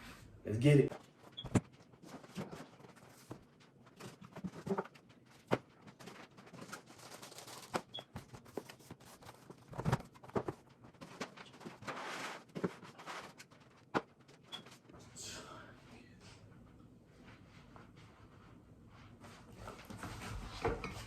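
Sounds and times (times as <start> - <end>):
packaging rustling: 2.0 - 13.9.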